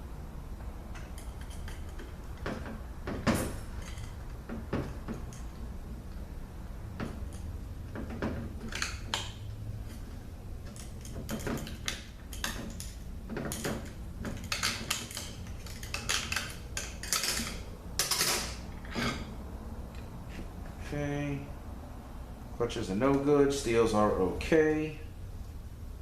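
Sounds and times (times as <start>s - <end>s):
low steady hum: 0.0s - 26.0s
metal plates clinking and scraping: 14.4s - 19.4s.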